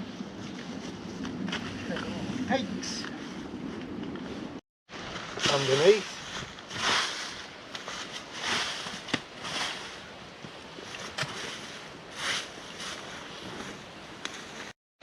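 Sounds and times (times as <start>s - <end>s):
rustling: 3.0s - 14.7s.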